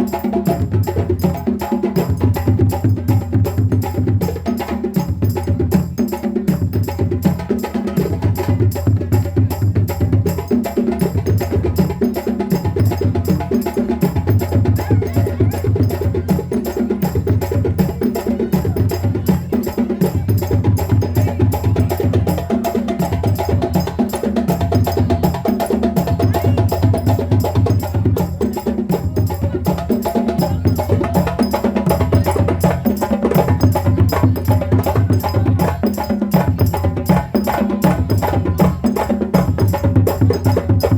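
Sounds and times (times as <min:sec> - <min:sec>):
fast hand drumming: 0:00.0 - 0:40.9.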